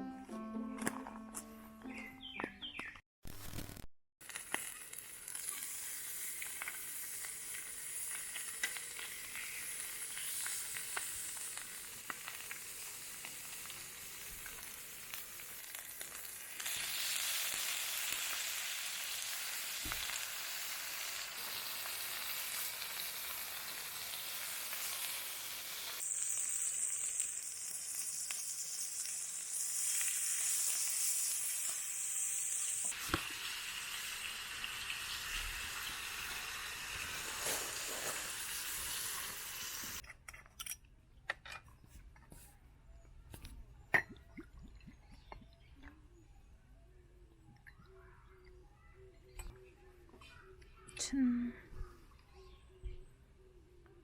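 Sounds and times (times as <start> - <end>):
food sizzling in a hot pan: 4.2 - 40.0.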